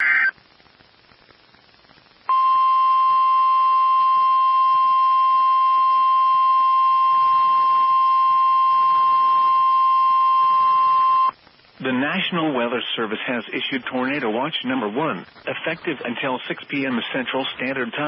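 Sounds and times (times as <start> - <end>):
faint hiss: 11.3 - 18.0.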